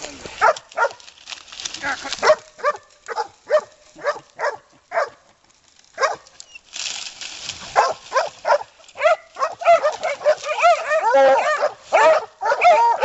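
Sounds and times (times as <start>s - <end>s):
dog barking sharply: 0.4s - 1.0s, 2.2s - 5.2s, 7.8s - 13.0s.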